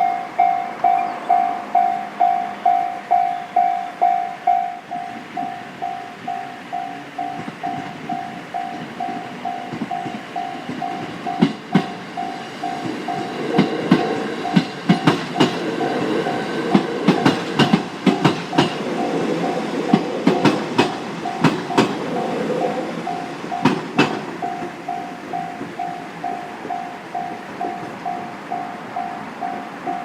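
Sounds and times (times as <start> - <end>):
level crossing bell ringing: 0.0 - 11.6
train running rumble: 0.0 - 30.0
train wheels clacking over rail joints: 6.9 - 28.3.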